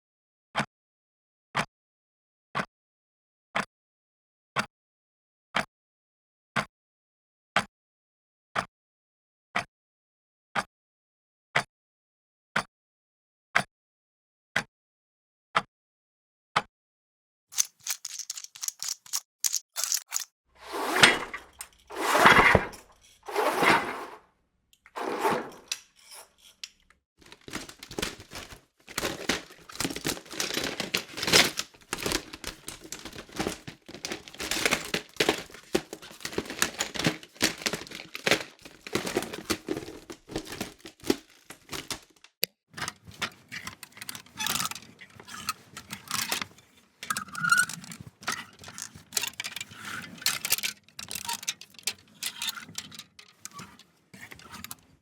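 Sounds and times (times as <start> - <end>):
irregular rattling and clicking: 17.5 - 24.2, 24.8 - 55.0
household objects clattering: 17.6 - 24.2, 24.9 - 55.0
knocks and scrapes: 17.6 - 24.2, 24.9 - 42.2, 42.8 - 55.0.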